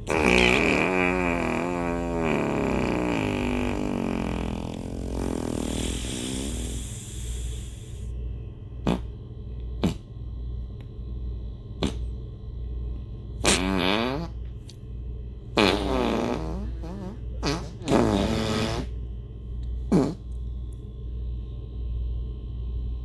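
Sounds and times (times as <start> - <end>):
farts: 0.0 - 7.6, 8.8 - 9.1, 9.8 - 10.1, 11.8 - 12.1, 13.4 - 14.5, 15.6 - 19.0, 19.9 - 20.4
low hum: 1.4 - 13.4, 18.9 - 23.0.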